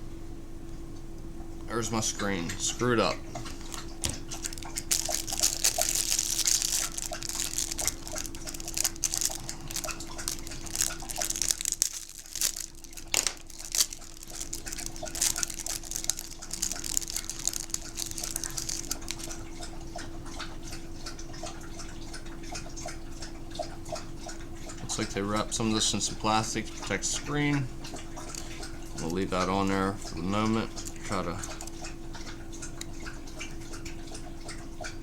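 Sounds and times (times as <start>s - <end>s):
plastic parts clicking and crinkling: 3.4s - 19.4s, 28.2s - 29.2s, 30.1s - 31.9s.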